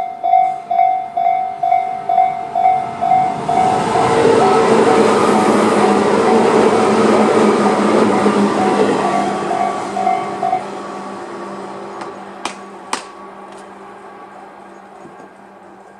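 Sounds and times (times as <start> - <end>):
level crossing warning bell: 0.0 - 10.7
electric train passing: 0.0 - 15.9.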